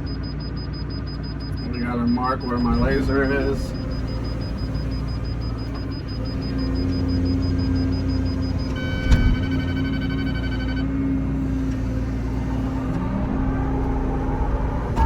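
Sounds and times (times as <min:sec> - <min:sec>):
rapid electronic beeping: 0:00.0 - 0:10.9
steady electronic tone: 0:00.0 - 0:11.0
diesel engine running: 0:00.0 - 0:15.0.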